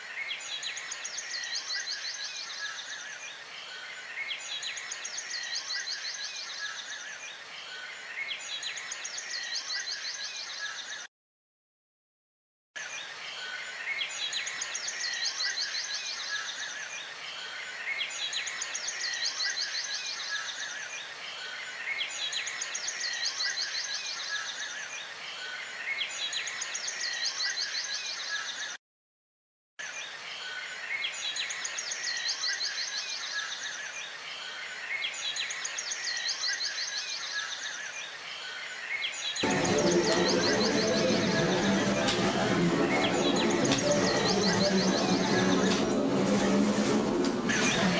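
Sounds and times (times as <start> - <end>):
high-pitched background chorus: 39.4 - 47.9.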